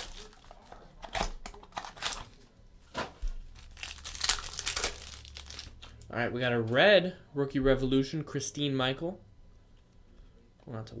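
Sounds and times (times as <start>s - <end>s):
cards being handled: 0.0s - 6.0s
wrapper crinkling and tearing: 0.0s - 6.0s.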